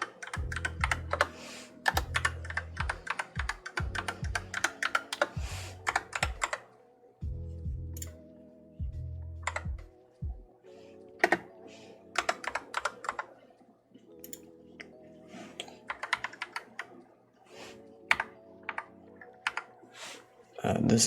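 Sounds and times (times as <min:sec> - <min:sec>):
mechanical keyboard keys clacking: 0:00.0 - 0:01.3, 0:01.9 - 0:06.6.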